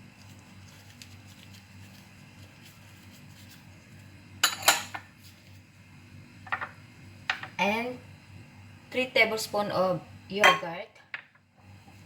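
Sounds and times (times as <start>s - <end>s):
kitchenware clinking: 4.4s - 5.2s, 10.4s - 11.4s.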